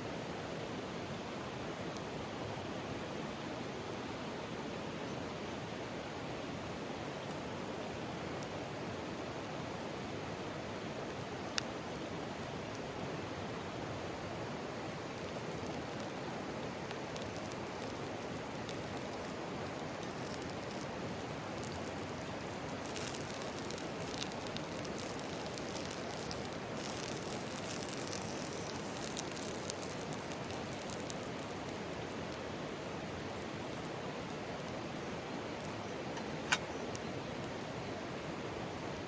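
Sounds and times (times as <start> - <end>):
crackling and popping: 11.0 - 39.0.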